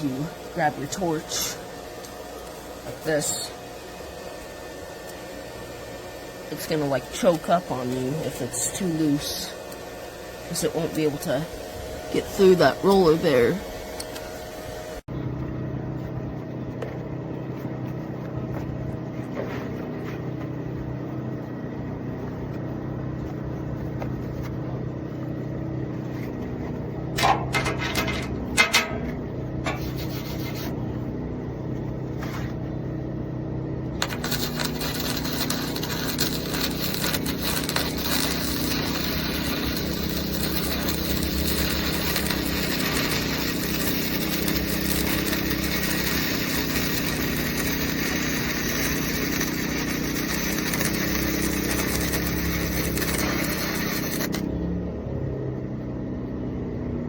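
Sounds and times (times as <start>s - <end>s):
welding arc crackling hiss: 0.0s - 15.1s, 26.4s - 30.8s, 34.0s - 54.5s
welder hum: 0.0s - 54.8s.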